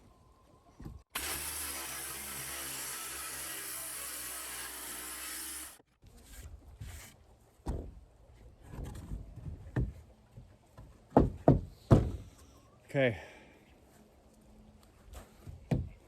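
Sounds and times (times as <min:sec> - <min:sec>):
power saw cutting wood: 0:01.1 - 0:05.8.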